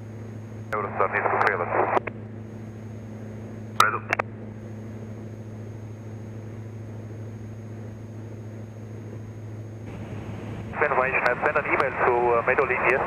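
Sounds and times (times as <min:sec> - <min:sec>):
propeller plane engine drone: 0:00.0 - 0:13.0
radio call: 0:00.7 - 0:02.1, 0:03.8 - 0:04.2, 0:09.9 - 0:13.0
radio clicks: 0:03.8 - 0:04.3, 0:11.1 - 0:11.9.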